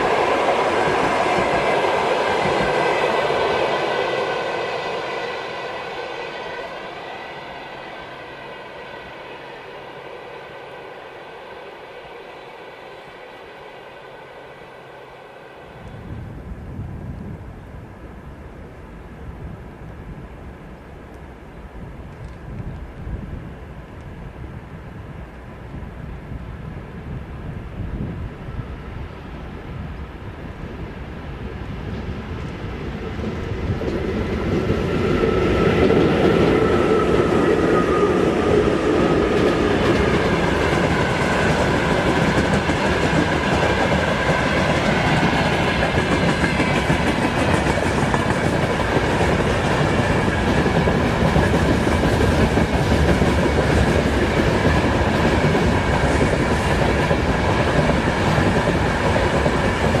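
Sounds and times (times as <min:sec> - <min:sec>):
train wheels clickety-clack: 0:00.0 - 0:06.6, 0:31.6 - 1:00.0
locomotive whine: 0:00.0 - 1:00.0.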